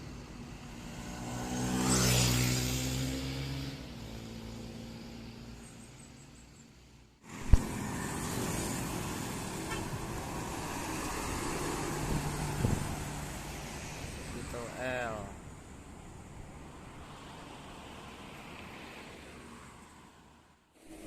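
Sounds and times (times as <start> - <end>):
passing vehicle engine: 0.0 - 6.2, 7.2 - 21.0
road traffic noise: 0.0 - 21.0
sharp loud thump: 7.4 - 7.8.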